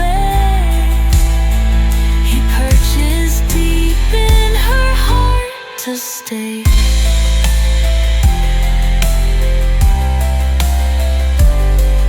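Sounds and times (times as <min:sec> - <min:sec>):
deep sustained bass: 0:00.0 - 0:05.4, 0:06.7 - 0:12.0
drum hit: 0:01.1 - 0:03.2, 0:06.7 - 0:12.0.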